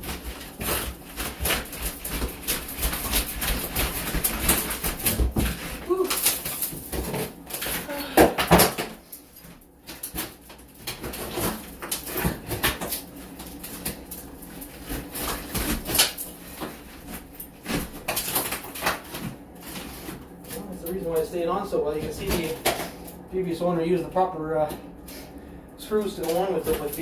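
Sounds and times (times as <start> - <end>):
board and tile cracking: 0.0 - 21.0, 22.0 - 23.0, 26.2 - 27.0.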